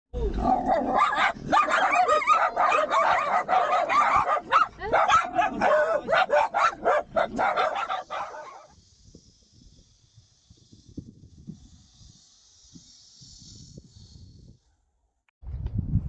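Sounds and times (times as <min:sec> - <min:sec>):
dogs barking and yipping: 0:00.4 - 0:08.7.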